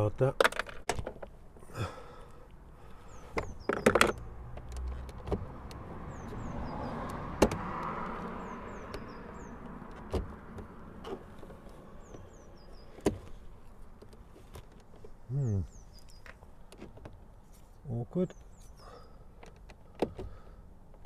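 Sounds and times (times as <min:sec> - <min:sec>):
bird calling: 0:15.3 - 0:16.4, 0:18.2 - 0:19.4.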